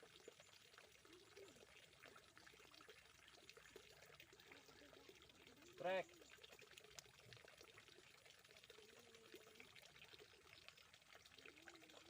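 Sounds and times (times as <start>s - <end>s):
trickle of running water: 0.0s - 12.0s.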